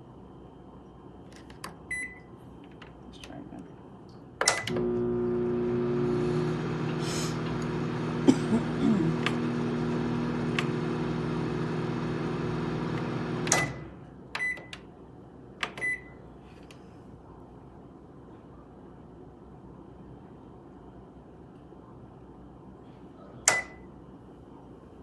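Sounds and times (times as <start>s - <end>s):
microwave clicks: 4.4s - 14.8s
microwave oven beeping: 4.4s - 14.8s, 15.8s - 16.2s, 23.5s - 23.9s
microwave oven humming: 4.5s - 14.2s.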